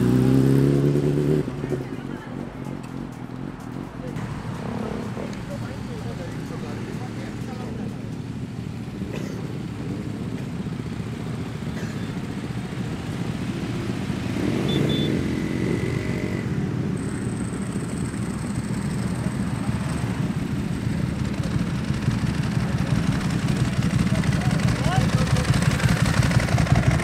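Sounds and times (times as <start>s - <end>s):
motorcycle engines running: 0.0s - 27.0s.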